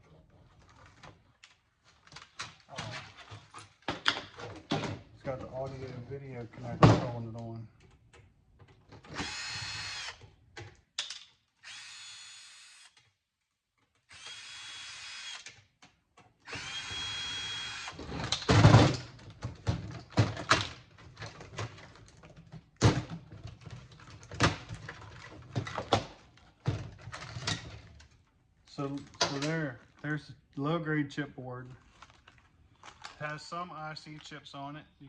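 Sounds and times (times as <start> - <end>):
cordless drill bursts: 9.1 - 10.2, 11.6 - 13.0, 14.1 - 15.5, 16.4 - 18.0.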